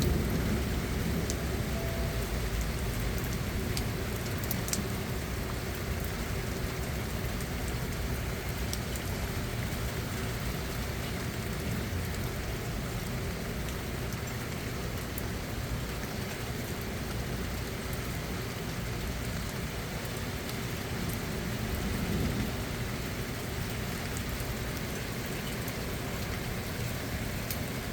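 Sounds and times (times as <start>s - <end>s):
raindrops ticking close by: 0.0s - 27.9s
steady rain: 0.0s - 27.9s.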